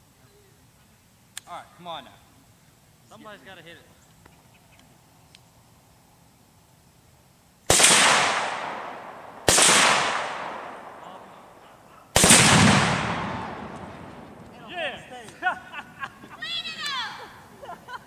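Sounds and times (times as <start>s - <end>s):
gunshots with echo: 7.7s - 14.5s.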